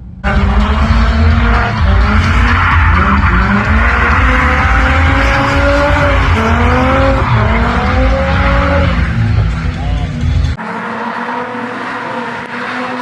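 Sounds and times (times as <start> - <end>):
car engine revving hard: 0.1 - 13.0.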